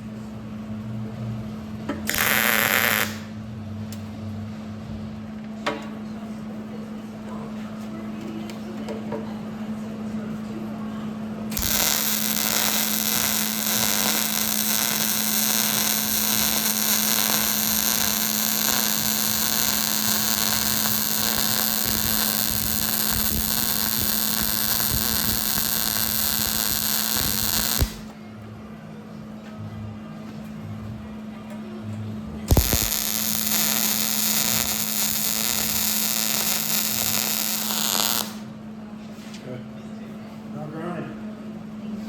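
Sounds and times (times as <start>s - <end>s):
low machinery hum: 0.0s - 40.4s
loud hissing with high whine: 2.1s - 3.3s, 11.5s - 28.1s, 32.5s - 38.5s.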